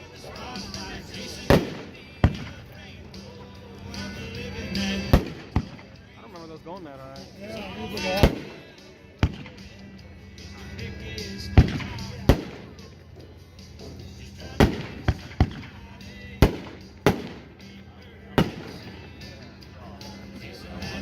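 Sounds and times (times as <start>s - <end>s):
background music: 0.0s - 21.0s
firework bangs: 1.4s - 2.6s, 5.1s - 5.9s, 8.2s - 9.6s, 11.6s - 12.8s, 14.5s - 15.8s, 16.4s - 17.6s, 18.4s - 19.0s.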